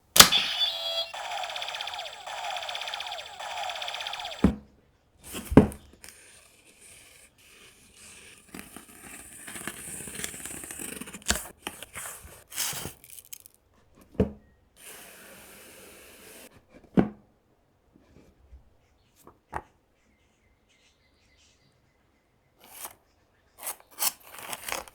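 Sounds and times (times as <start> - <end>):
electronic falling tones: 0.2 - 4.5
packaging rustling and tearing: 24.0 - 24.9.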